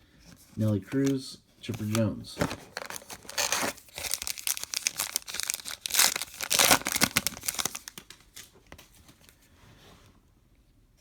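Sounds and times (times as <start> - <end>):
wrapper crinkling and tearing: 0.9 - 8.5.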